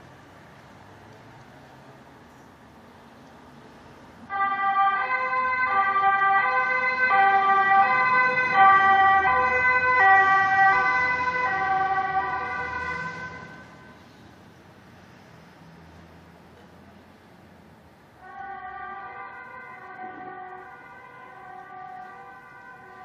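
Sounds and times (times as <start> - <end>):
faint background noise: 0.0 - 23.0
ambulance two-tone siren: 4.3 - 14.1, 18.2 - 23.0.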